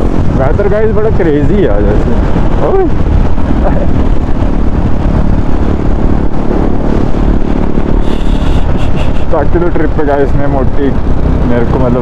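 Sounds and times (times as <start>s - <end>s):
motorcycle engine running: 0.0s - 12.0s
wind on microphone: 0.0s - 12.0s.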